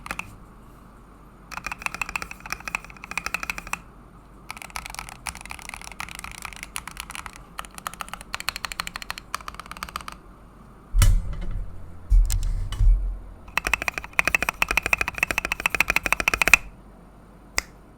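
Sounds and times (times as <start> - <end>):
mechanical keyboard typing: 0.0 - 0.3, 1.5 - 3.8, 4.5 - 10.2, 13.5 - 16.7
loud deep thumps: 11.0 - 13.5.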